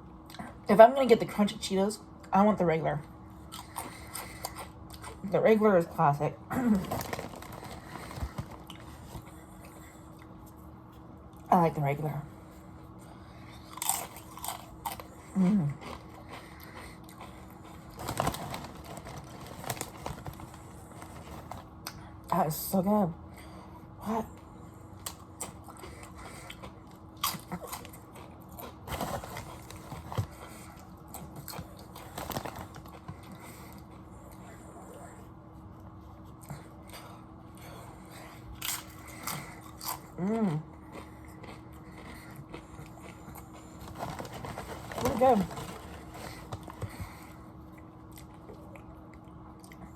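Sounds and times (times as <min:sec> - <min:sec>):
chips being chewed: 0:03.4 - 0:05.3, 0:06.5 - 0:10.6, 0:13.4 - 0:22.1, 0:25.0 - 0:34.6, 0:38.5 - 0:49.9.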